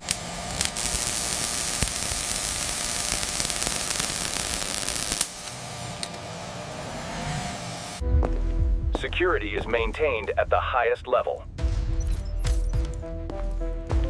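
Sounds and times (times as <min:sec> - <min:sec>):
steady hiss: 0:00.0 - 0:06.0.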